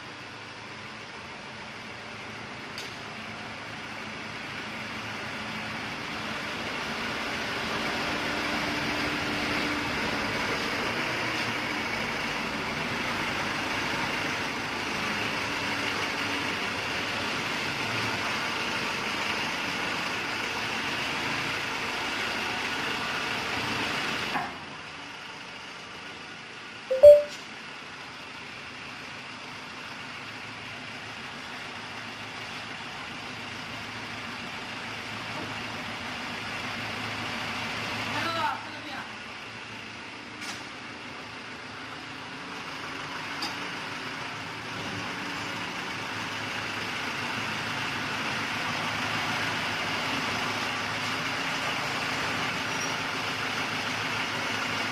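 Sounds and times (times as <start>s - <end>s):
diesel generator running: 0.0s - 26.8s.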